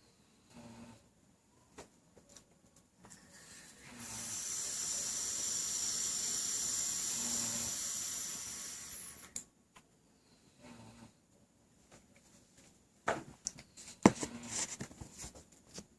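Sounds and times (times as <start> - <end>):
person snoring: 0.5 - 1.0, 3.4 - 9.2.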